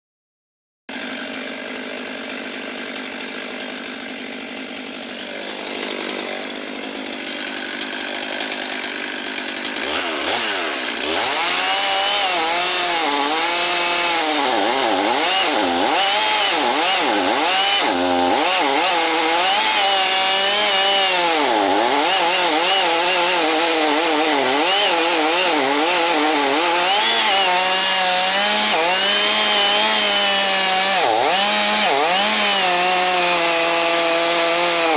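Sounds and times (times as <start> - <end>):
chainsaw cutting wood: 0.9 - 34.9.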